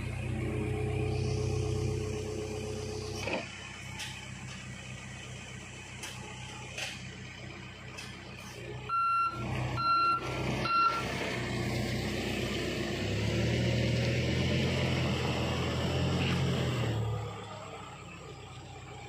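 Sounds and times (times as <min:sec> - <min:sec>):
diesel engine running: 0:00.0 - 0:19.0
reversing alarm beeping: 0:08.9 - 0:11.2.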